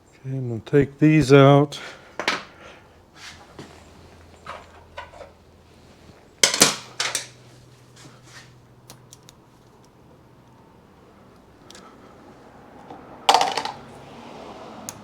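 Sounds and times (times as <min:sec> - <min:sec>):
steel ball bearings clinking: 0:12.9 - 0:13.9.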